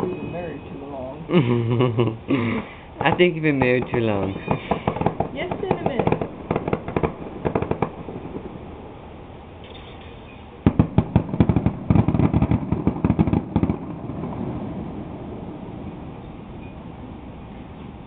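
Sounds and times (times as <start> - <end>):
fireworks bangs and crackles: 2.9 - 17.4
low rumble: 4.9 - 9.6.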